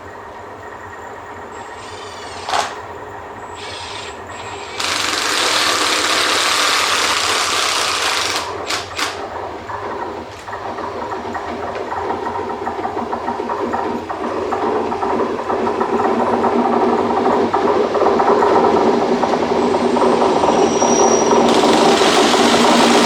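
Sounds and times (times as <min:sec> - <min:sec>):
locomotive running: 0:00.0 - 0:23.0
loud hiss: 0:01.8 - 0:02.8, 0:03.6 - 0:09.2
high squeals: 0:19.5 - 0:23.0.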